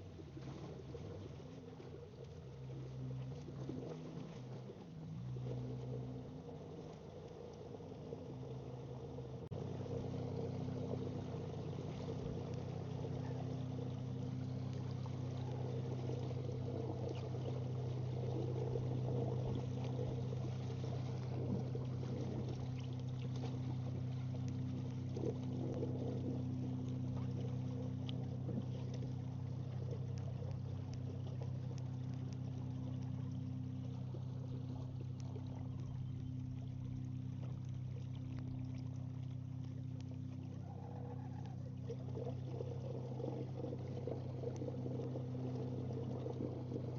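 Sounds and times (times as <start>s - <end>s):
boat motor humming: 0.0s - 46.9s
water lapping on hull: 0.0s - 46.9s.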